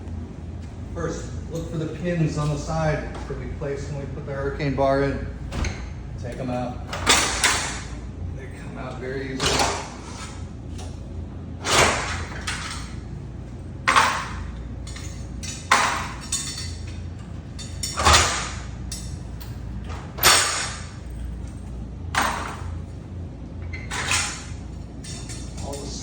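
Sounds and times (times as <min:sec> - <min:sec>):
metal pins clinking and scraping: 0:13.8 - 0:23.0, 0:23.6 - 0:26.0.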